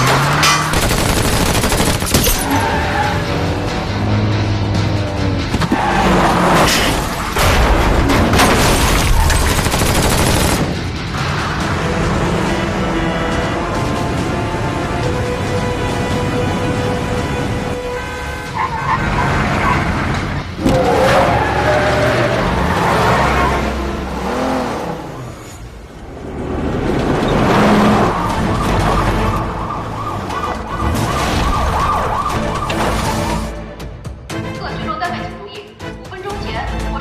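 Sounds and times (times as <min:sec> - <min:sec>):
vehicle engine noise: 0:00.0 - 0:08.4, 0:09.4 - 0:33.8
police sirens wailing: 0:26.9 - 0:33.7
fast warbling siren: 0:28.0 - 0:33.5.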